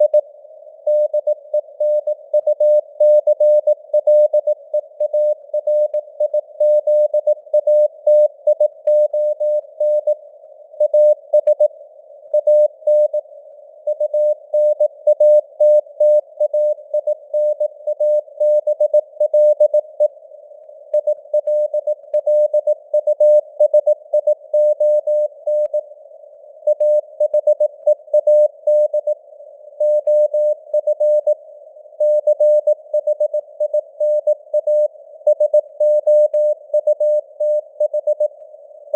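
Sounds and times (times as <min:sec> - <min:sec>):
morse code beeps: 0:13.9 - 0:20.1, 0:29.8 - 0:31.4, 0:32.0 - 0:38.3.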